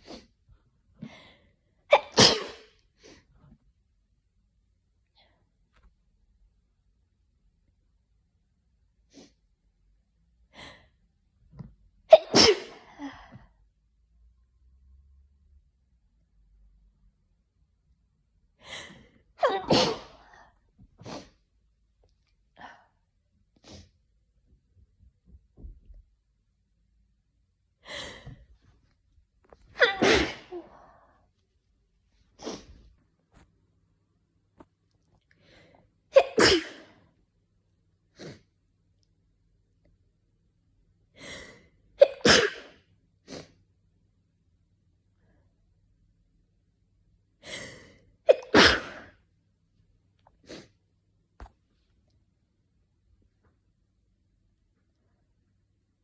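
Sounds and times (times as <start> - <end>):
person sneezing: 1.9 - 2.8, 12.1 - 13.5, 18.7 - 21.4, 29.7 - 31.0, 32.4 - 32.8, 36.2 - 37.0, 42.0 - 43.6, 47.5 - 49.2, 50.4 - 50.8.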